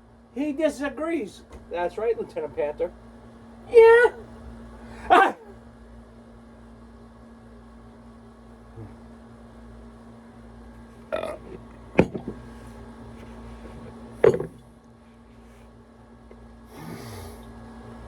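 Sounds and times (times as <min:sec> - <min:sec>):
steady low hum: 0:00.0 - 0:18.0
man's throaty sounds: 0:11.1 - 0:11.6.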